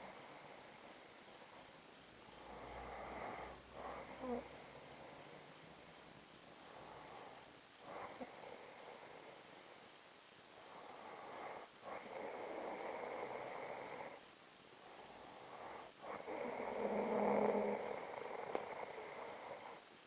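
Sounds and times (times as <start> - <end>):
woman snoring: 2.5 - 6.0, 11.0 - 14.2, 15.8 - 19.8.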